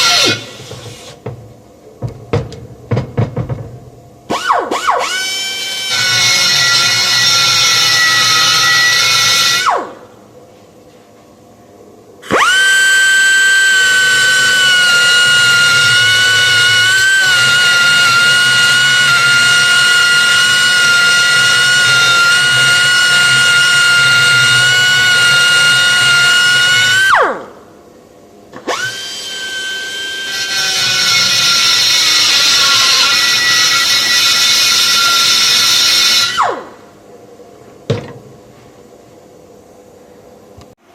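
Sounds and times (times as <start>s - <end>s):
grinder grinding metal: 0.0s - 1.1s, 13.7s - 27.1s, 29.8s - 36.4s
rotary power tool whining: 0.0s - 1.2s, 4.4s - 9.8s, 12.2s - 27.4s, 28.6s - 36.6s.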